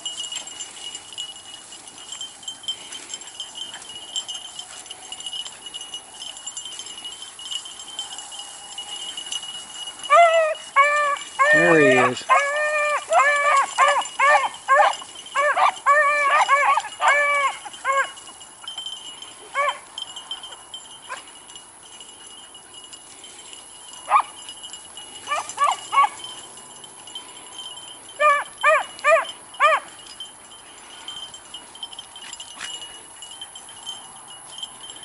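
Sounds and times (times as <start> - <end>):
hounds baying: 0.0 - 35.0.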